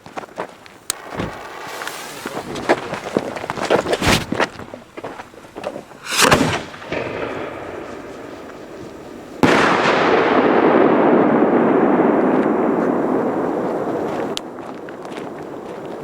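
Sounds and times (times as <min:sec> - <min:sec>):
firework blast: 0:00.9 - 0:04.7, 0:05.9 - 0:15.5
firework bang: 0:01.0 - 0:04.5, 0:06.0 - 0:13.3
steady rushing noise: 0:05.8 - 0:09.2.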